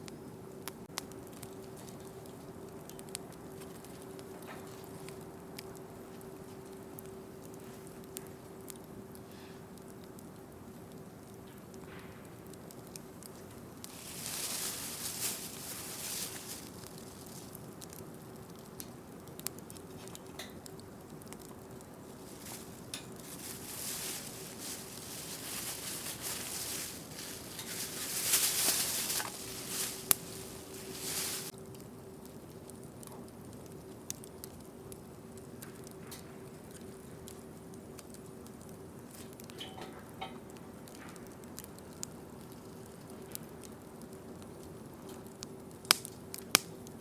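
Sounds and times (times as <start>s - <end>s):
campfire crackling: 0.0s - 47.0s
faint steady hum: 0.0s - 47.0s
fire popping: 0.0s - 47.0s
fire hissing: 0.6s - 39.4s.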